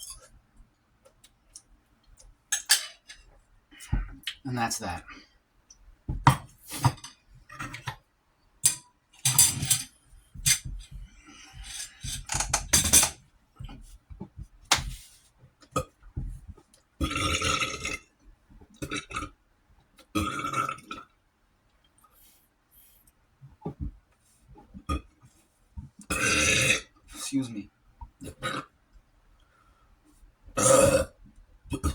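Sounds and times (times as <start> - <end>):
man burping loudly: 17.0 - 18.0, 20.1 - 21.0, 26.1 - 26.9, 30.6 - 31.9.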